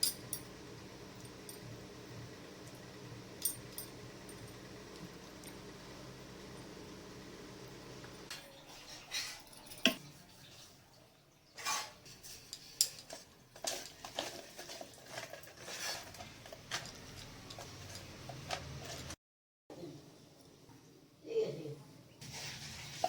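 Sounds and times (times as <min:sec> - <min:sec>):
kitchen utensils and dishes clinking: 0:08.3 - 0:19.2.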